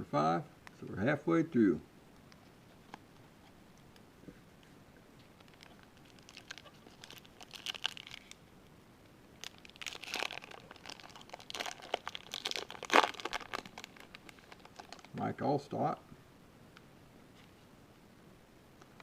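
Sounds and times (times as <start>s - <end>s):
wrapper crinkling and tearing: 5.3s - 8.4s, 9.4s - 15.2s.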